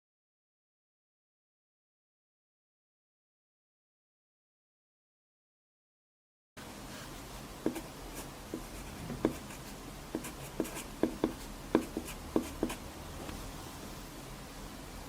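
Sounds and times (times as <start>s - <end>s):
pencil writing on paper: 7.6s - 12.8s.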